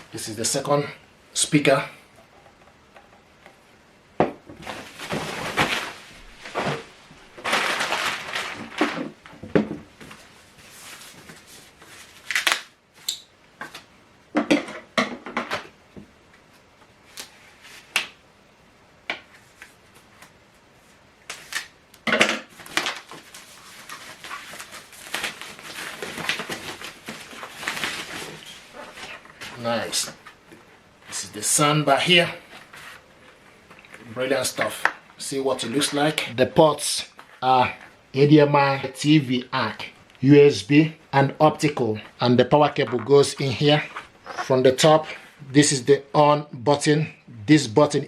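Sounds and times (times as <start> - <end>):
packaging rustling and crinkling: 4.6 - 12.7, 22.5 - 30.7.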